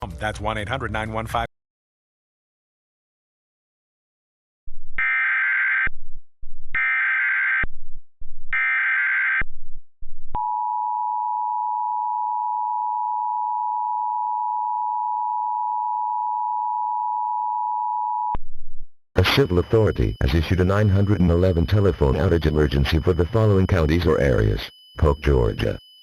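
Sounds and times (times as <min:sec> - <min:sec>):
screechy digital data tones: 0:19.2 - 0:26.0
two-tone attention signal: 0:19.2 - 0:26.0.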